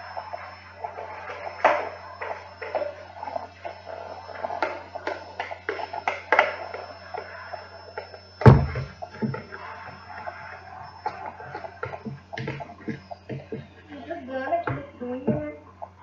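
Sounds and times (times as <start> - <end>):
steady low hum: 0.0 - 16.0
loud thump: 8.4 - 8.9.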